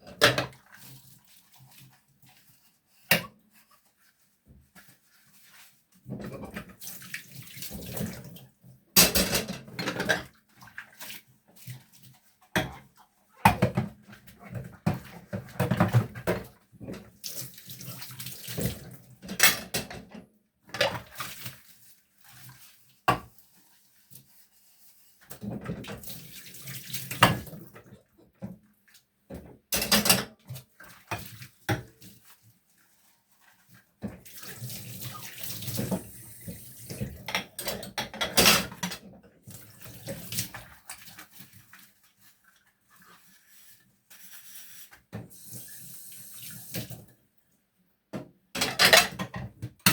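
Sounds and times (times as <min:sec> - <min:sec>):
dishes clattering: 0:09.0 - 0:10.3, 0:37.2 - 0:39.0, 0:48.6 - 0:49.9
tap water running into sink: 0:34.1 - 0:39.0.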